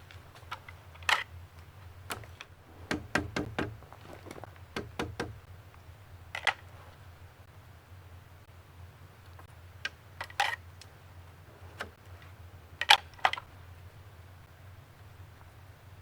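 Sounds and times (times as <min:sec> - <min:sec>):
light knocks and clicks: 0:02.1 - 0:05.5.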